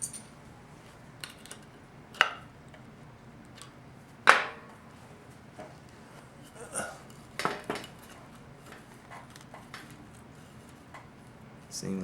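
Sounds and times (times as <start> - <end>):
metal parts knocking with ring: 0.0 - 0.4.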